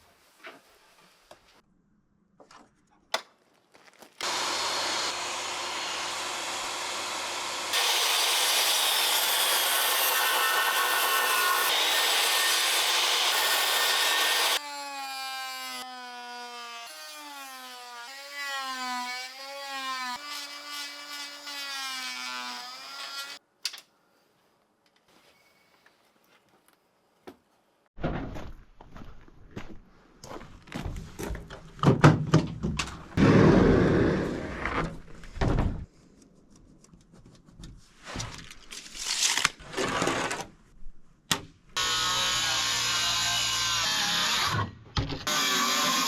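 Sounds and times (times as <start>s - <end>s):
wavering power tool whine: 4.2s - 14.6s
power saw sawing wood: 4.2s - 23.4s, 41.8s - 46.0s.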